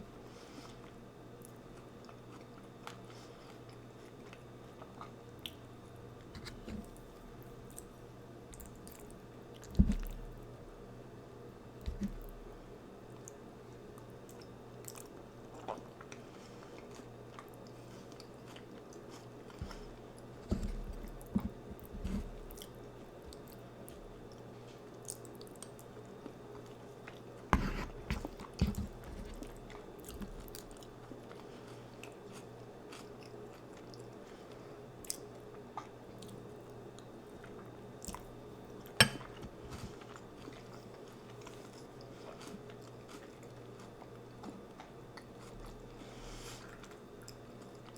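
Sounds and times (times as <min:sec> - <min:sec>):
low steady hum: 0:00.0 - 0:47.9
person chewing and crunching: 0:00.8 - 0:05.7, 0:13.2 - 0:23.6, 0:24.3 - 0:36.4, 0:39.2 - 0:46.0.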